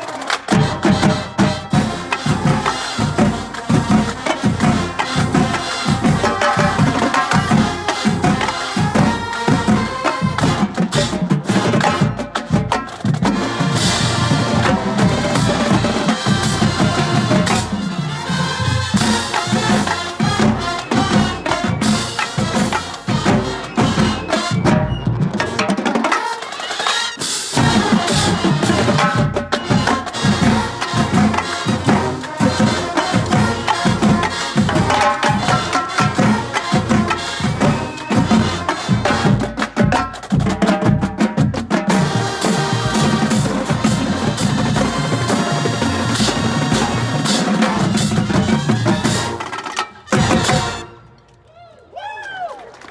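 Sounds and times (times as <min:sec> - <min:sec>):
snare drums: 0:00.0 - 0:51.3
tenor drums: 0:00.0 - 0:51.4.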